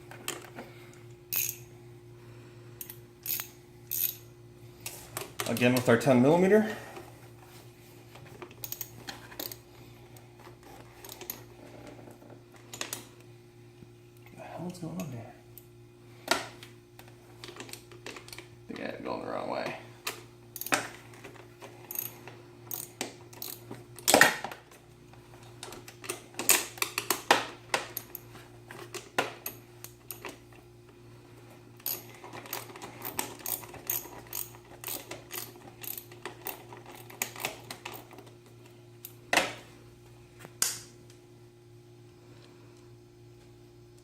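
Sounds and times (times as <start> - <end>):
socket ratchet clicking: 1.3 - 1.6, 2.8 - 4.2, 31.8 - 38.0.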